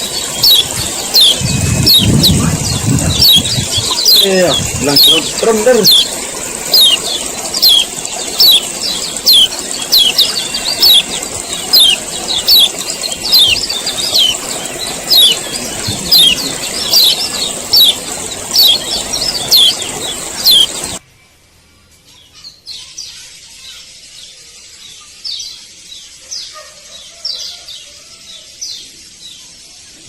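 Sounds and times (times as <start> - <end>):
bird chattering call: 0.0 - 21.0.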